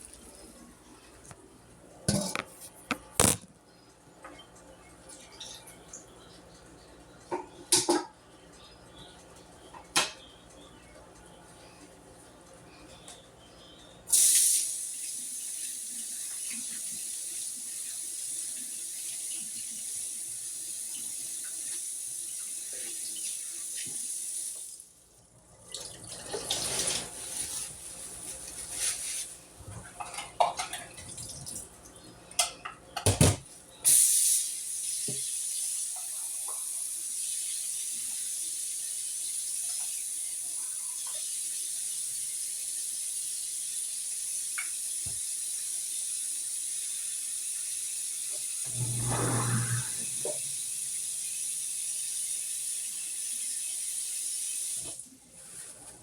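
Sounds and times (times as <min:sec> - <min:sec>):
water running from a tap: 0:14.1 - 0:24.9, 0:25.7 - 0:29.4, 0:33.9 - 0:55.9.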